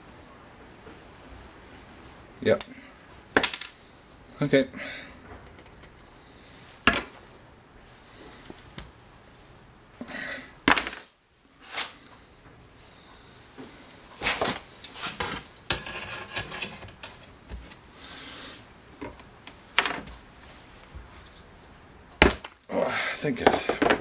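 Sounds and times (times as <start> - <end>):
wire rack clanking on frying pan: 15.7 - 17.2.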